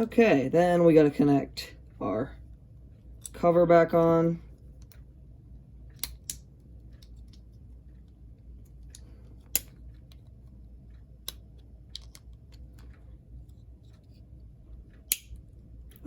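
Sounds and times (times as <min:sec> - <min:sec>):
faint low hum: 0:00.0 - 0:16.0
plastic parts clicking together: 0:08.7 - 0:13.1.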